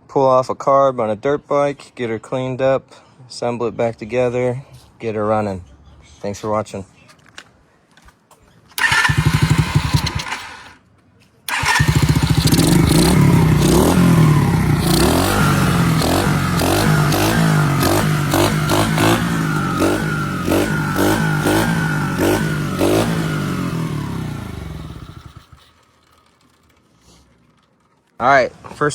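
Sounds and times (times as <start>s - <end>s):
dirt bike engine revving: 8.8s - 10.8s, 11.5s - 25.8s.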